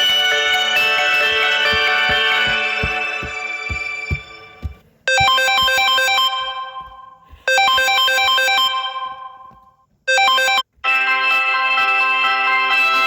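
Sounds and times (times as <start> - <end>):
different phone tone: 10.1 - 10.6
synthesized phone ringtone melody: 10.1 - 13.0.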